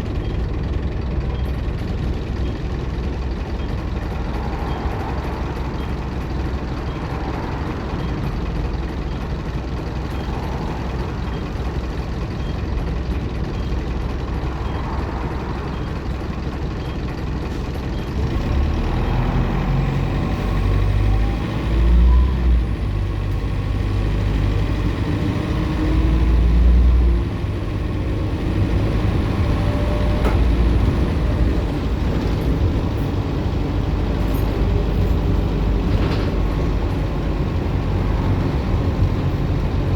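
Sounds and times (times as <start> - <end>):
bus diesel engine running: 0.0 - 39.9.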